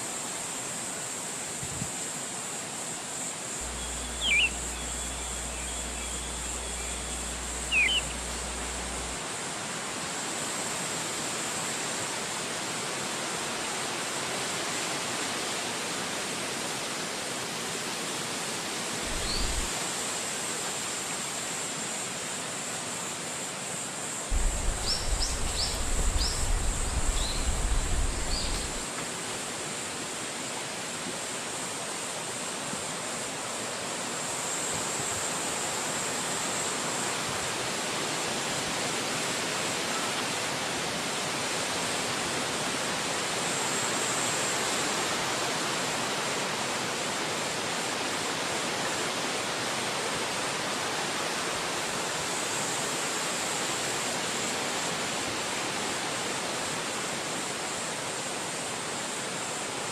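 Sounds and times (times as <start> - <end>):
wind rushing through trees: 0.0 - 11.8, 19.0 - 20.0, 24.3 - 30.6
short high chirps: 3.6 - 9.1
wind buffeting microphone: 19.1 - 19.7, 24.3 - 28.8.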